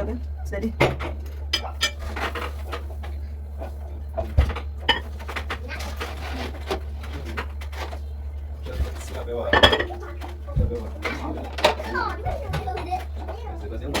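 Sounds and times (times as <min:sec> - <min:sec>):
steady low hum: 0:00.0 - 0:14.0
pots and dishes clinking: 0:00.8 - 0:14.0.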